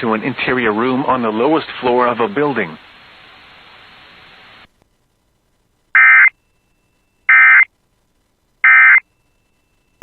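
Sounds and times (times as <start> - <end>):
digital data tone bursts: 6.0 - 6.4, 7.3 - 7.7, 8.6 - 9.2.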